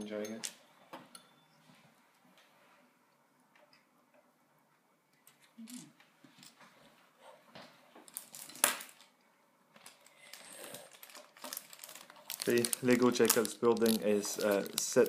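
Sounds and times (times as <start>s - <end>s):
crinkling rustle: 7.9s - 9.1s, 9.8s - 15.0s.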